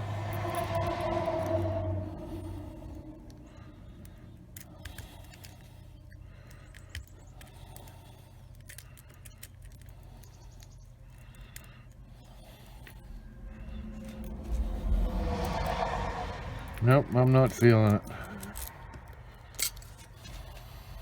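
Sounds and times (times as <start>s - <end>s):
lock pick clicking and scraping: 2.9s - 13.2s, 16.7s - 21.0s.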